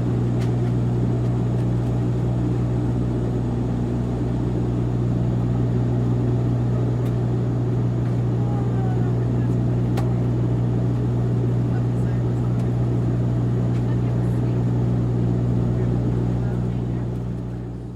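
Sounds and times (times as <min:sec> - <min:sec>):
propeller plane engine humming: 0:00.0 - 0:17.9.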